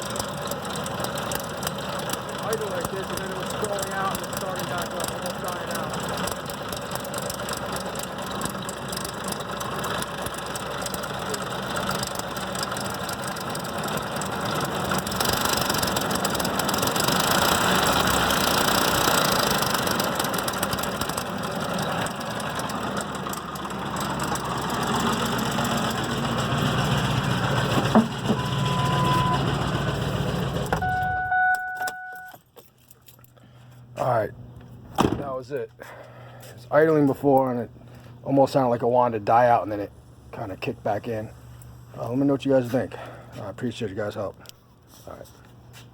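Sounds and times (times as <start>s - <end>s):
rattling engine idling: 0.0s - 32.1s
short electronic chime: 28.3s - 29.5s, 30.8s - 32.4s.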